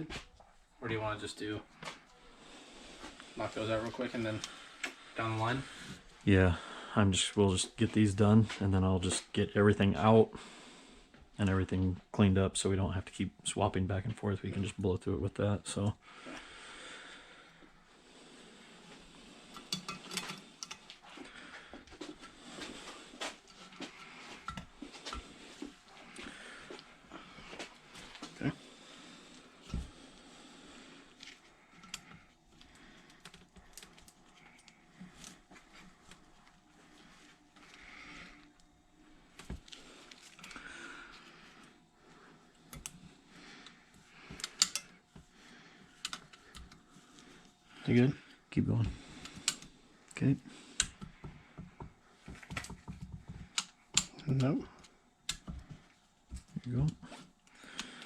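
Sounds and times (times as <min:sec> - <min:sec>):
metal clicks and knocks of tools: 0:19.5 - 0:20.9, 0:44.3 - 0:44.9
metal tool clicks and taps: 0:44.4 - 0:44.8.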